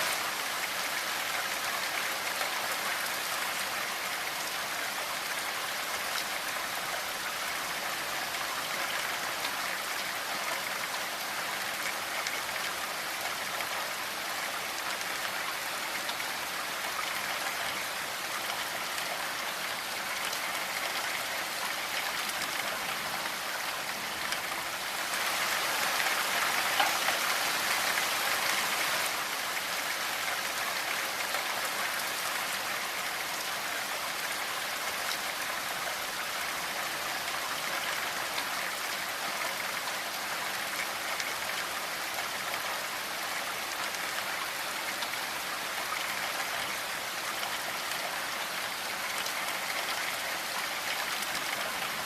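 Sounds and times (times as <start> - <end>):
steady rain: 0.0 - 52.0.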